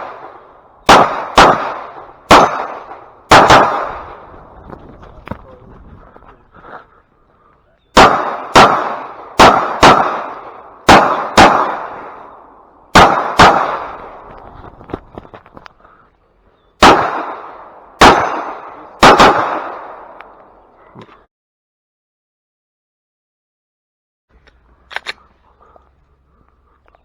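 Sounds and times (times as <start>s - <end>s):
pistol shots: 0.0s - 4.5s, 7.9s - 14.4s, 16.8s - 20.5s.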